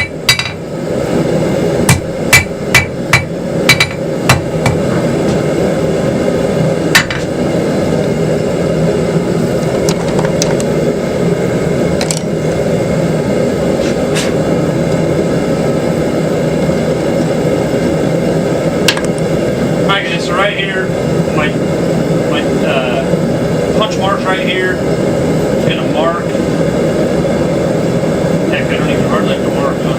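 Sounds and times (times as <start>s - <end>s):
hammer striking iron on anvil: 0.0s - 0.6s, 1.9s - 4.8s, 6.9s - 7.3s.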